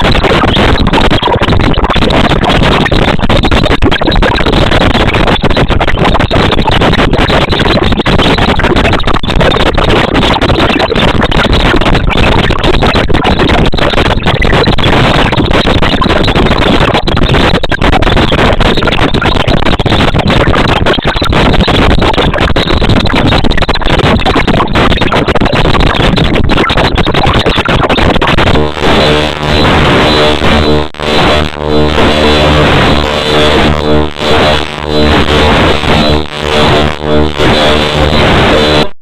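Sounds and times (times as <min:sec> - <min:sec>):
sustained droning chords: 0:28.5 - 0:38.9.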